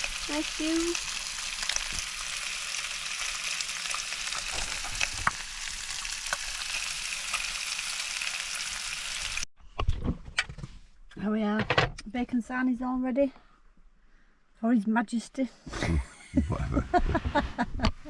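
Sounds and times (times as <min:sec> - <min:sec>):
bacon sizzling in a frying pan: 0:00.0 - 0:09.5.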